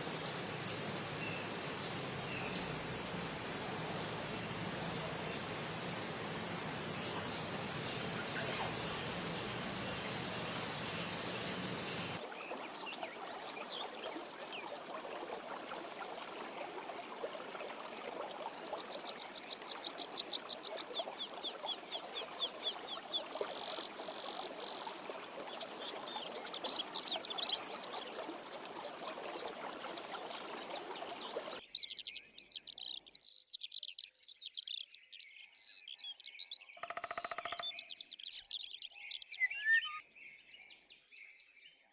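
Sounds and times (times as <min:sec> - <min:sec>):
songbirds singing and chirping: 0:00.0 - 0:14.9, 0:18.2 - 0:41.9
background hiss: 0:00.0 - 0:31.6.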